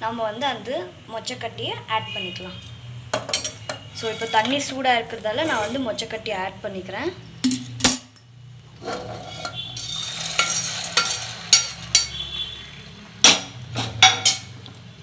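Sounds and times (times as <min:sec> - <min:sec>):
metal kitchenware clinking: 0:03.1 - 0:05.8, 0:07.3 - 0:12.3, 0:13.2 - 0:14.6
metal clanks: 0:03.2 - 0:04.5.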